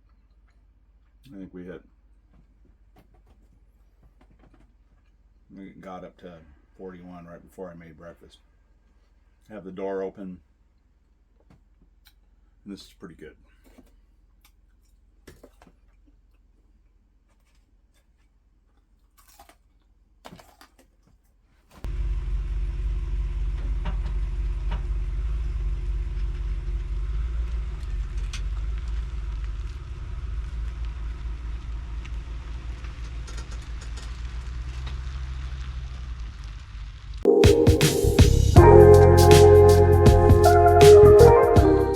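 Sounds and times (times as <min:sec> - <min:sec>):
vehicle engine rumble: 0:21.9 - 0:37.3.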